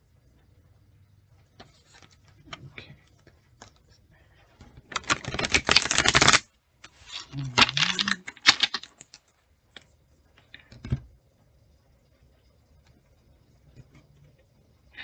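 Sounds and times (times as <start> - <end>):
cards being riffle shuffled: 4.9 - 9.2
cards tapping: 7.4 - 9.1.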